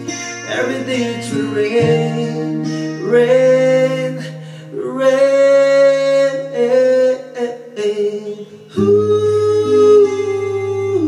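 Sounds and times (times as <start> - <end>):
acoustic guitar: 0.0 - 11.0
man singing: 0.0 - 11.0.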